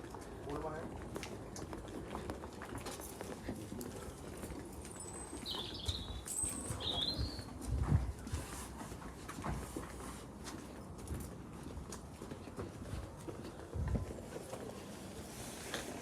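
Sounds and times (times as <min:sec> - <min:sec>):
footsteps on a path: 0:00.0 - 0:16.0
bird chirping: 0:05.4 - 0:07.5.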